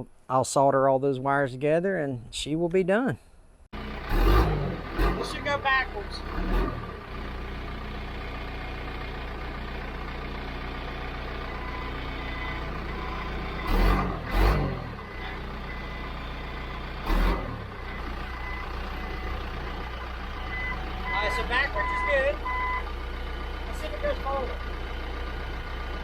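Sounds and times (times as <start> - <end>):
backhoe engine running: 3.8 - 26.0
faint backup alarm beeping: 11.2 - 13.9, 14.9 - 23.0.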